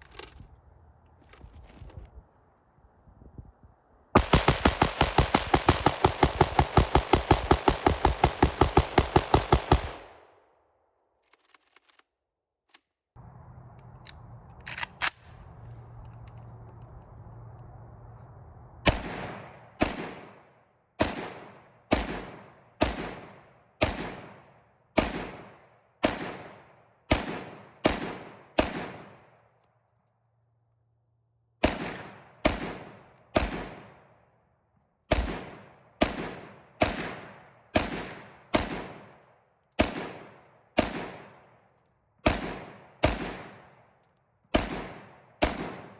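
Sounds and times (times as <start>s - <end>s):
rifle shots with echo: 4.2s - 10.4s, 18.8s - 29.5s, 31.6s - 34.3s, 35.1s - 45.9s
low steady hum: 13.2s - 20.2s.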